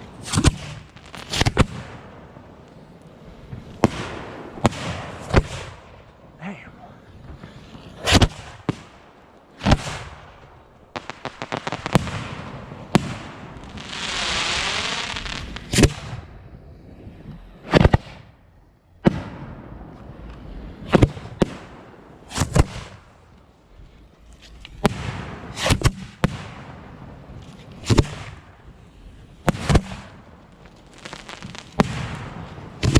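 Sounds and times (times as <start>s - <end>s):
crackling pops: 0.0s - 2.0s, 2.6s - 6.2s, 7.2s - 16.3s, 19.9s - 23.5s, 27.4s - 28.7s, 29.5s - 32.9s
fireworks hiss: 0.0s - 2.0s, 9.6s - 16.2s, 27.6s - 32.9s
fireworks bangs: 0.0s - 16.4s, 19.0s - 23.4s, 24.8s - 28.8s, 29.4s - 32.9s.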